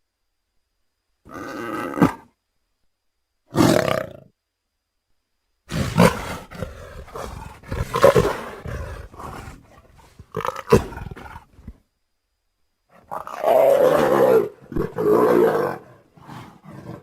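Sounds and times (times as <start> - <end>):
big cat roaring: 3.5 - 4.3, 5.7 - 11.7, 13.1 - 17.0.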